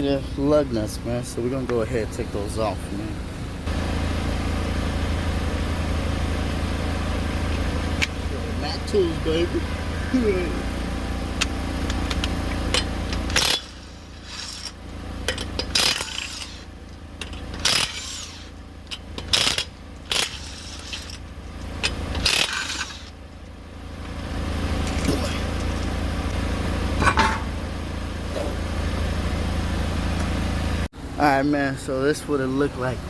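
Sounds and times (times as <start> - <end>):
steady low hum: 0.0 - 33.0
impact wrench spinning lug nuts: 10.9 - 27.6.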